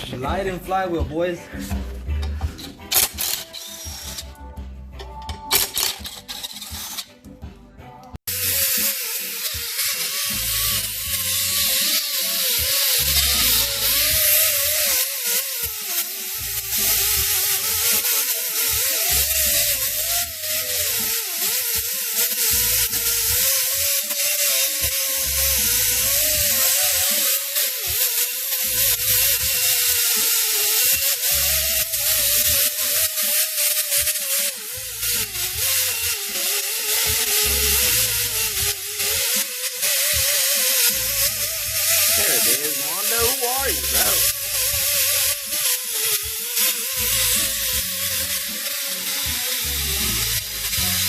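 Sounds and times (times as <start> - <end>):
background music with low beat: 0.0 - 24.0.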